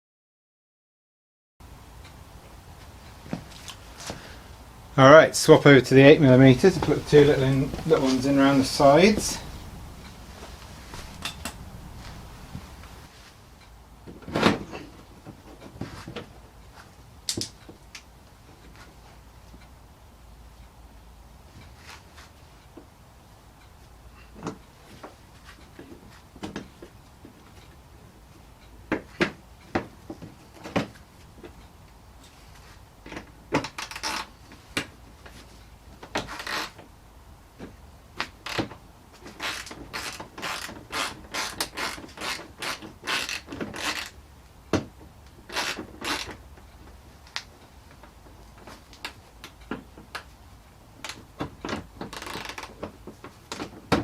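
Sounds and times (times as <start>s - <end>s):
hand ratchet clicking: 39.4s - 44.2s, 45.5s - 46.4s.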